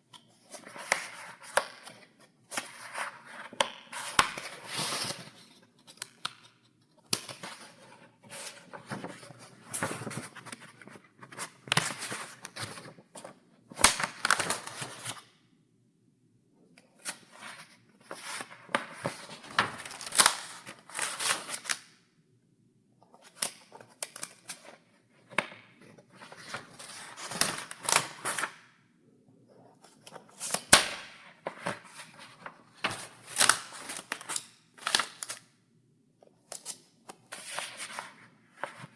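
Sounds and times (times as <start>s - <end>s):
paper pages turning: 7.2s - 15.1s, 37.3s - 38.9s.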